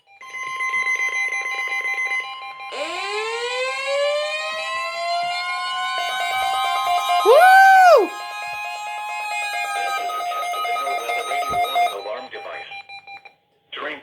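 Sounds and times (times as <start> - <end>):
siren winding up: 2.7 - 12.0.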